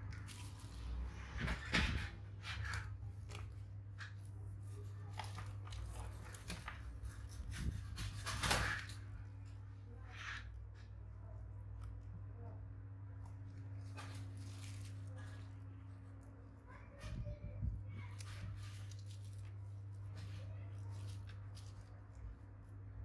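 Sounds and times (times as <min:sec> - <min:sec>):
rustling and scraping on workbench: 0:00.0 - 0:09.2
low electrical hum: 0:00.0 - 0:23.0.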